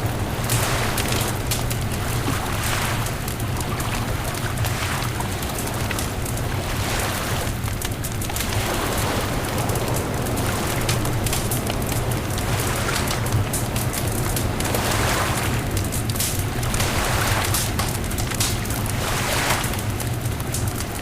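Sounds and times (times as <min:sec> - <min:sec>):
bonfire crackling: 0:00.0 - 0:21.0
low wind rumble: 0:00.0 - 0:21.0
surf washing: 0:00.0 - 0:21.0.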